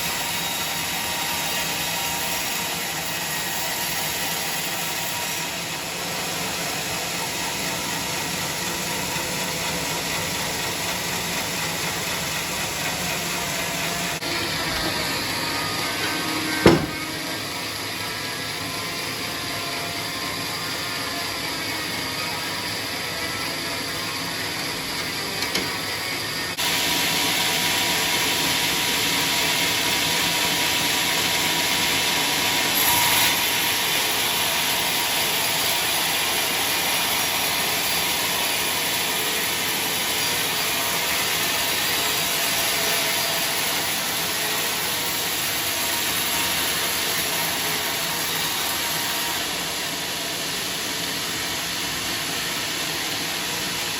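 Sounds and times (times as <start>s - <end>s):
power saw running: 0.0s - 53.9s.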